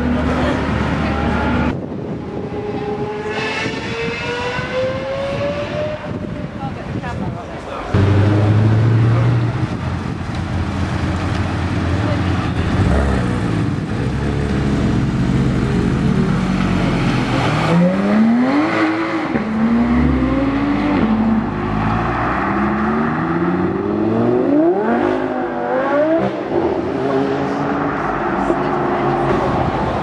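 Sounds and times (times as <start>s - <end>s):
sports car engine accelerating: 11.2s - 29.6s.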